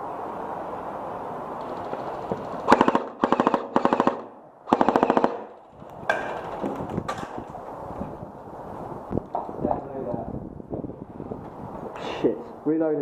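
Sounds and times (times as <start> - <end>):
airsoft rifle firing bursts: 2.6 - 5.6.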